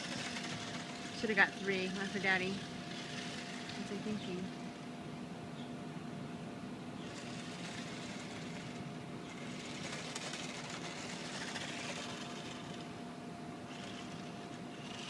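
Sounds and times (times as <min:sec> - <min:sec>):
toy car motors whirring: 0:00.0 - 0:04.5, 0:07.0 - 0:12.9, 0:13.7 - 0:15.0.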